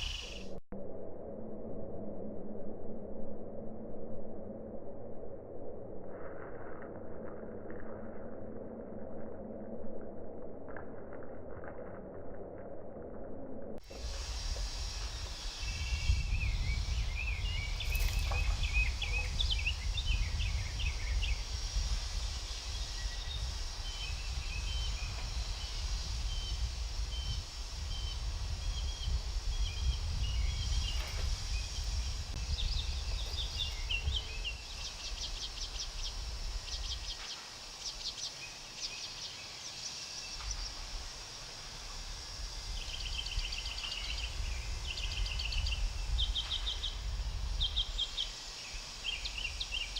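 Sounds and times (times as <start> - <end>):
small birds chirping: 0.0 - 0.6, 13.9 - 41.0, 41.8 - 49.9
steady high hiss: 0.0 - 0.6, 13.8 - 49.9
low rumble: 0.0 - 37.2.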